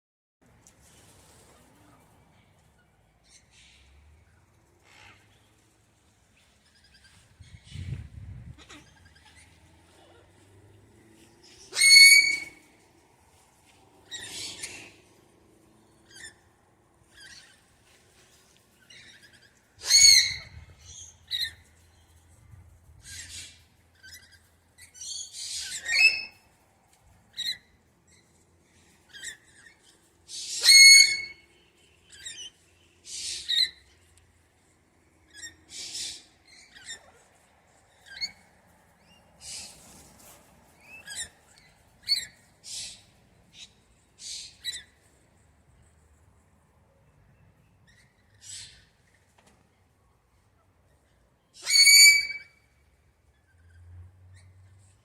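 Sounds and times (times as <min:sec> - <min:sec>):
parrots calling: 0:06.6 - 0:10.7, 0:11.6 - 0:12.6, 0:14.0 - 0:15.0, 0:18.8 - 0:21.7, 0:23.1 - 0:26.6, 0:27.3 - 0:34.0, 0:35.2 - 0:38.4, 0:40.8 - 0:45.0, 0:51.5 - 0:52.7
parrot harsh screeches: 0:11.7 - 0:12.6, 0:19.8 - 0:20.6, 0:25.4 - 0:26.4, 0:29.1 - 0:31.5, 0:51.6 - 0:52.6.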